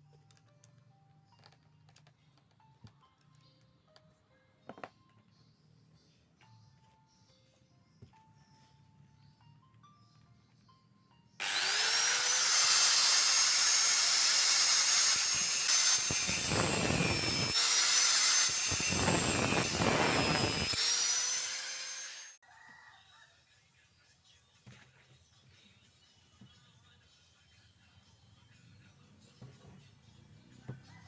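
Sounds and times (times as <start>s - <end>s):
drill scraping through wood: 11.4s - 22.4s
electric drill whining: 11.4s - 22.4s.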